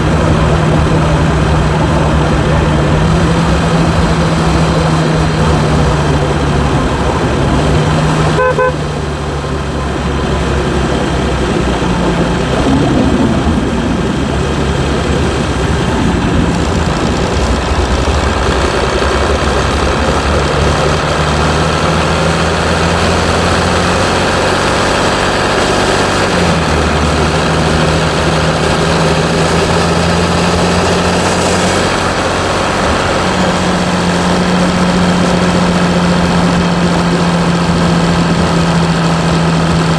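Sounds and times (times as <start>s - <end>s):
diesel engine running: 0.0s - 39.9s
car horn toot: 8.3s - 9.0s.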